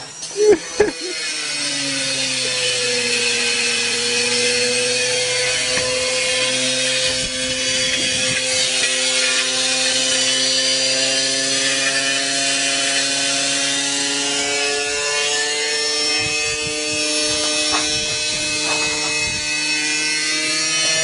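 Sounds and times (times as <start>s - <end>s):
washing machine spinning whine: 0.0s - 12.2s.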